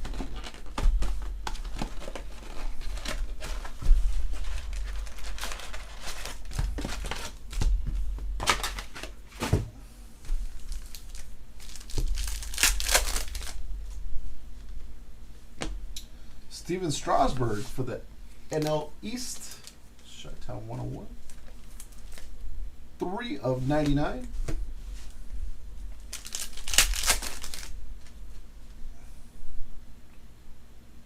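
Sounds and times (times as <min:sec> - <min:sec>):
plastic packaging crinkling and tearing: 0:00.0 - 0:07.8, 0:08.4 - 0:09.5, 0:10.4 - 0:14.0, 0:18.5 - 0:19.8, 0:21.2 - 0:22.4, 0:26.0 - 0:28.2.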